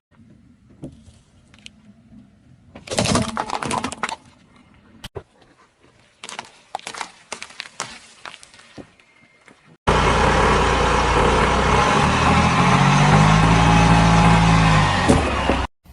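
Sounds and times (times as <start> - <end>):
objects crunching under tyre: 5.9 - 9.7.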